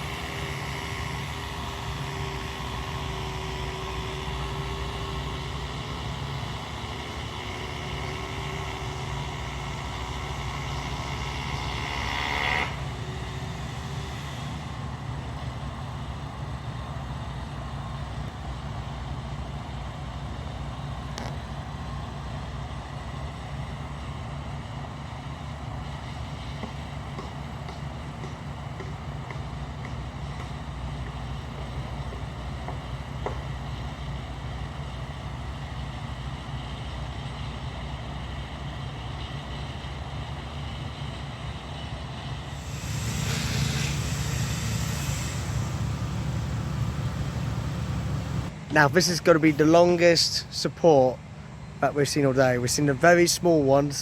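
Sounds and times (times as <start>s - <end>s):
heavy vehicle engine running: 0.0s - 51.8s
high whine: 42.6s - 50.2s.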